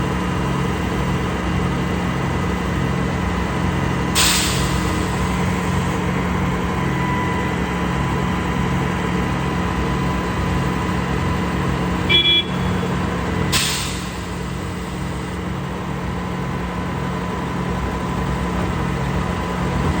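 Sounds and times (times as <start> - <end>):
diesel engine pulsing: 0.0 - 20.0
burst of hiss: 4.2 - 5.3, 13.5 - 14.4
short high beep: 12.1 - 12.8.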